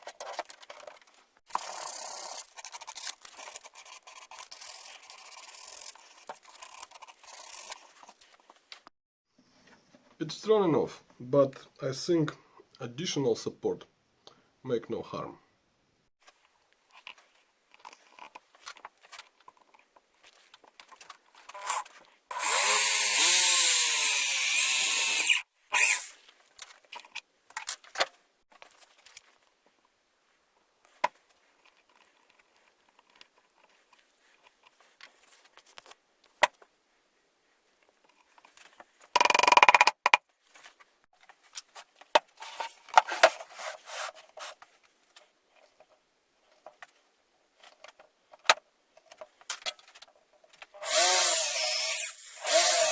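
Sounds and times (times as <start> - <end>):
power drill drilling into wood: 22.3 - 26.1, 50.8 - 52.9.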